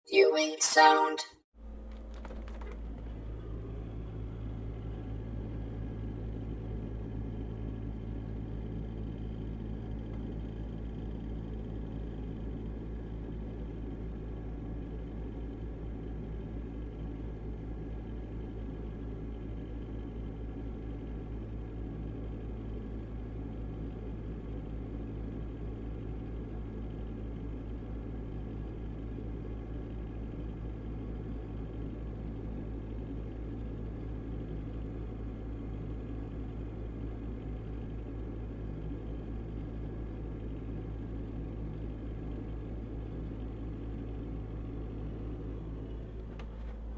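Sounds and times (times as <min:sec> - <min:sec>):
refrigerator humming: 0:01.6 - 0:11.6, 0:42.3 - 0:46.9.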